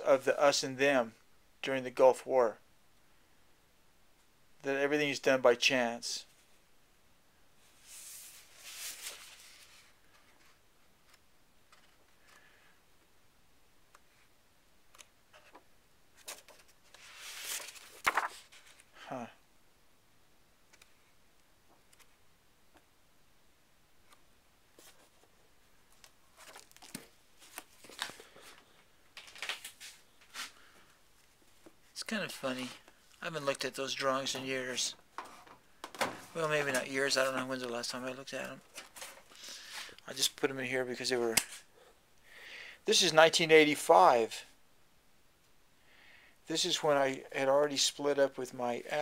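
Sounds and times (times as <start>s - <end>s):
paper pages rustling: 7.8s - 12.4s, 16.2s - 18.9s, 24.8s - 25.3s, 25.9s - 30.6s, 35.2s - 37.7s, 38.3s - 40.0s.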